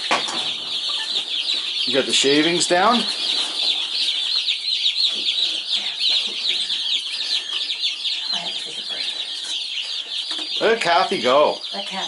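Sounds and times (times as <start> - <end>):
chicks peeping: 0.0 - 12.0.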